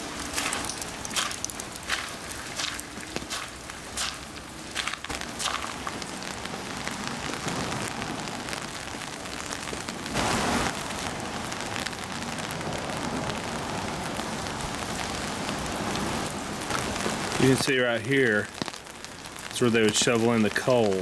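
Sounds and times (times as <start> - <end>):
running water: 0.0 - 6.4
heavy rain hissing: 0.0 - 21.0.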